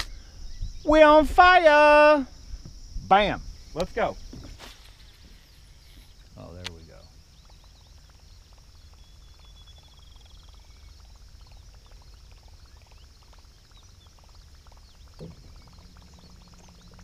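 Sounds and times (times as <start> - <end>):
high insect drone: 0.0 - 17.0
frog chirps: 3.4 - 17.0
dense rapid ticking: 6.4 - 17.0.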